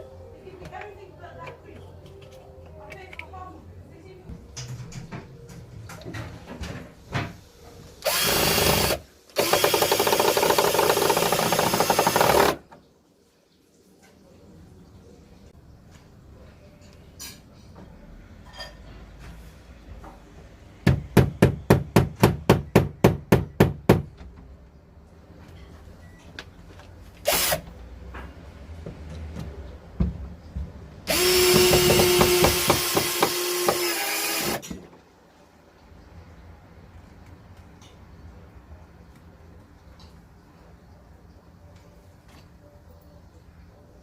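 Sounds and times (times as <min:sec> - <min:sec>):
power drill driving screw: 0:08.0 - 0:12.6, 0:27.2 - 0:27.6, 0:31.1 - 0:34.6.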